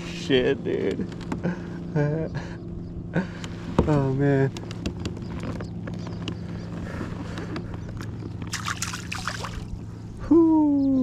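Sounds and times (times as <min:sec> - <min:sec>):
steady low hum: 0:00.0 - 0:11.0
water sloshing around boat: 0:03.2 - 0:10.2
water splashing: 0:08.5 - 0:09.8.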